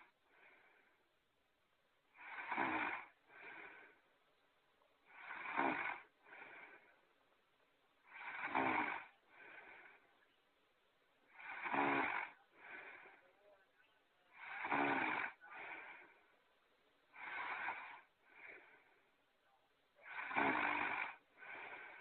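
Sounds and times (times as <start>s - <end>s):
cartoon snoring: 2.1s - 3.9s, 5.1s - 6.9s, 8.0s - 10.0s, 11.3s - 13.3s, 14.3s - 16.2s, 17.1s - 18.9s, 20.0s - 22.0s.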